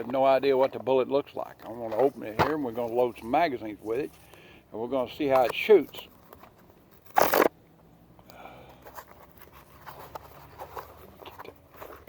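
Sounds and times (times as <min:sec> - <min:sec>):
cardboard box ripping: 0:07.0 - 0:07.5.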